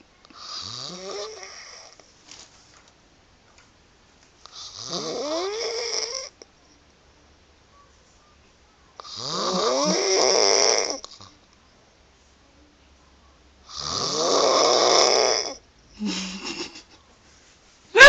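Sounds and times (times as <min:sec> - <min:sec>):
woman snoring: 0:00.4 - 0:02.0, 0:04.6 - 0:06.4, 0:09.0 - 0:11.0, 0:13.7 - 0:16.4.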